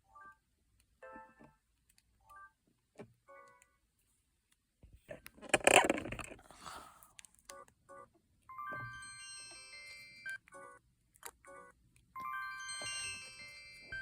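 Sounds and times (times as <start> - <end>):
ringtone melody: 7.6 - 10.8, 11.4 - 14.0.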